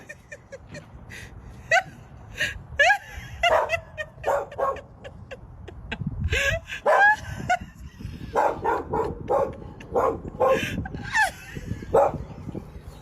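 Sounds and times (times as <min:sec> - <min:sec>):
animals barking and yipping: 0:03.4 - 0:05.1, 0:06.8 - 0:07.3, 0:08.2 - 0:13.0.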